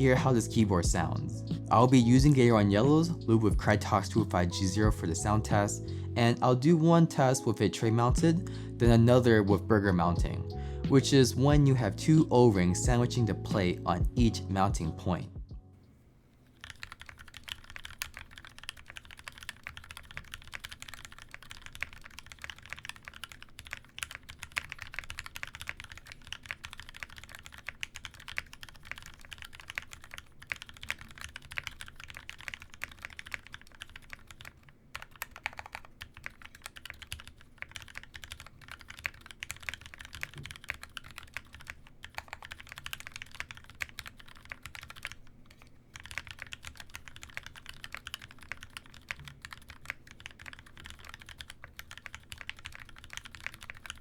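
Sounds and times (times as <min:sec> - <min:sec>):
mechanical keyboard typing: 0:16.5 - 0:54.0.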